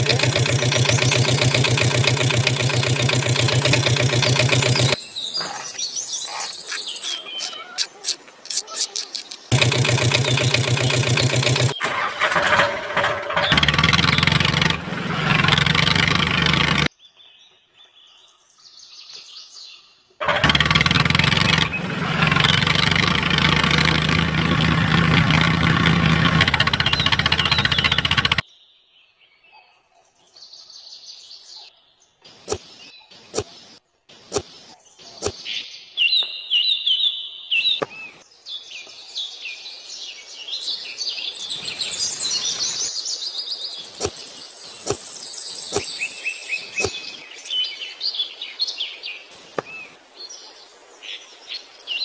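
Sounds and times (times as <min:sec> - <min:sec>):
motor running loud: 0:00.0 - 0:05.0, 0:09.5 - 0:16.9, 0:20.2 - 0:28.4
faint bird chirps: 0:05.0 - 0:09.5.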